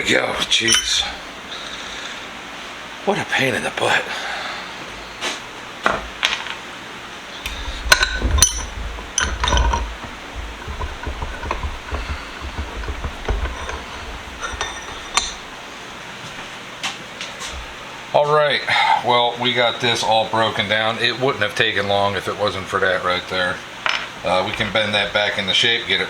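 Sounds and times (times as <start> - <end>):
metal parts clinking: 0.5 - 1.2, 7.4 - 15.6
metallic ring: 0.5 - 1.2, 7.5 - 15.6
low handling rumble: 7.3 - 16.8.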